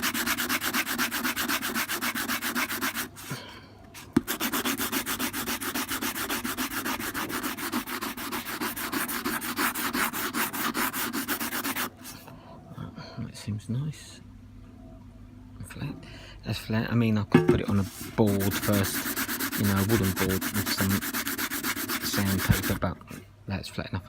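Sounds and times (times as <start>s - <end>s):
hand sanding metal: 0.0s - 3.3s, 4.2s - 12.0s, 17.8s - 22.8s.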